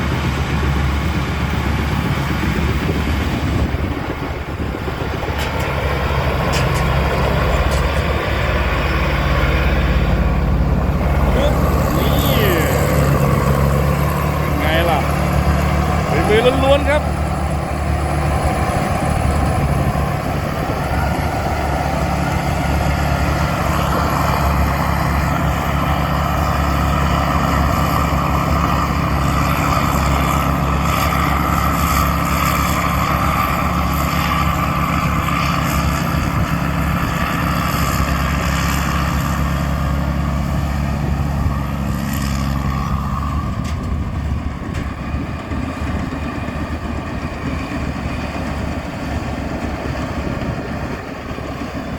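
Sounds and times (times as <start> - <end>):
steady whine: 0.0 - 35.7
diesel engine running under load: 0.0 - 51.9.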